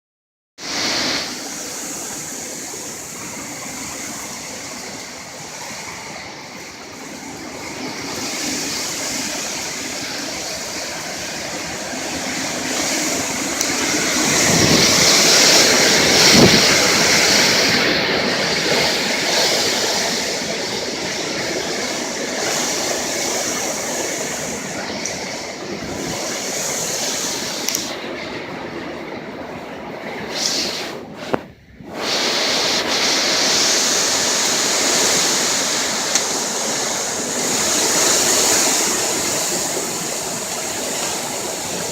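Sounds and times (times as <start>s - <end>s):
hurricane wind roaring: 0.6s - 41.9s.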